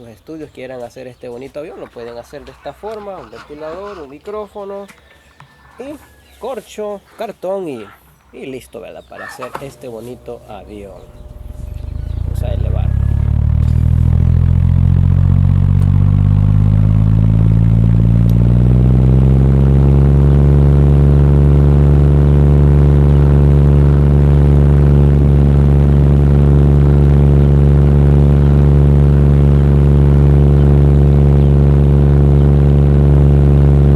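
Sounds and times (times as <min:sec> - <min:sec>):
electric fan droning: 0:05.8 - 0:33.9.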